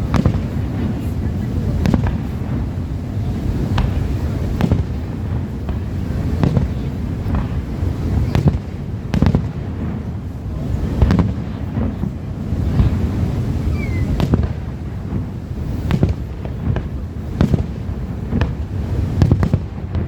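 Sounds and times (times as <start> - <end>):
steady low rumble: 0.0 - 20.0
firework shell bangs: 1.7 - 10.4.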